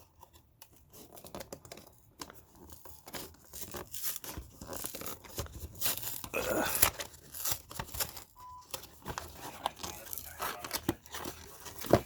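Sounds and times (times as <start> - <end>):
packaging being torn open: 3.5 - 8.4.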